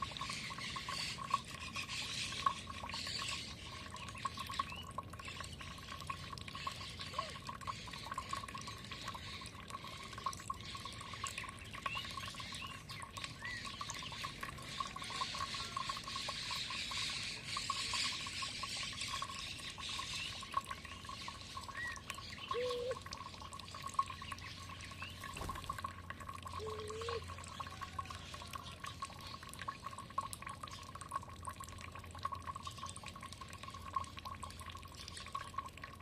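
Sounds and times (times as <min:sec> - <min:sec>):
bird chirps: 0:19.1 - 0:23.0, 0:26.6 - 0:27.2
low bird calls: 0:21.0 - 0:23.1, 0:26.5 - 0:28.4.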